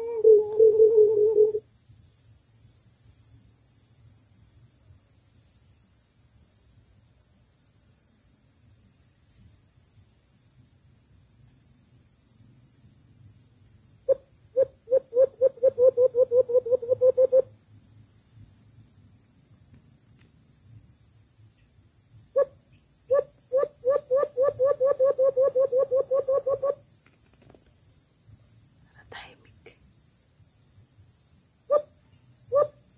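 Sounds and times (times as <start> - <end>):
low hooting dove call: 0.0 - 1.6, 14.1 - 17.5, 23.1 - 26.8, 32.5 - 32.8
insects buzzing: 0.0 - 32.9.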